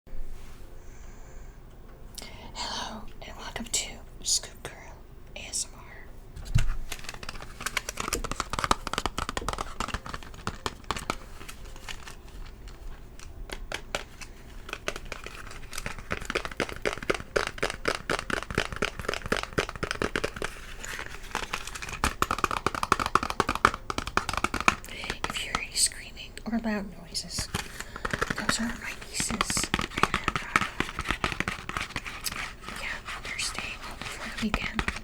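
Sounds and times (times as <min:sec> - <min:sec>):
chalk scratching on chalkboard: 0:27.3 - 0:35.0.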